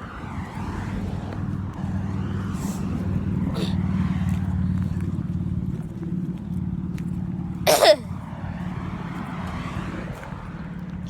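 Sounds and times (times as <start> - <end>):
person coughing: 7.7 - 8.1.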